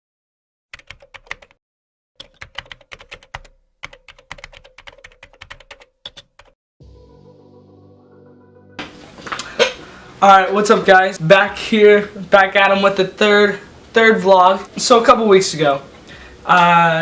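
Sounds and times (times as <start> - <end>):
typing on a keyboard: 0.8 - 1.6, 2.2 - 6.6
steady hum with held tones: 8.8 - 17.0.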